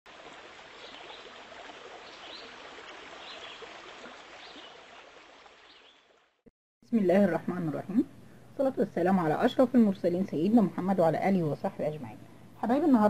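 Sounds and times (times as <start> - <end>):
running water rushing: 0.1 - 6.4.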